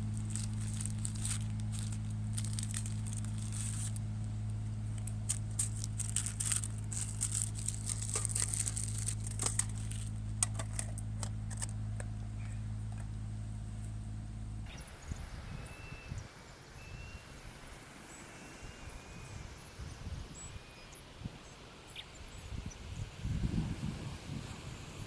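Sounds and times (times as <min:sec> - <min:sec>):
plastic wrapping crinkling: 0:00.0 - 0:11.8
low hum: 0:00.0 - 0:20.6.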